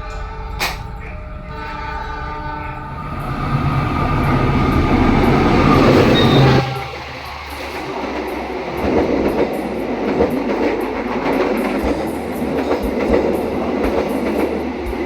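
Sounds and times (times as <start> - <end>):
train horn: 0.0 - 9.3
passenger train rumbling: 0.0 - 15.0.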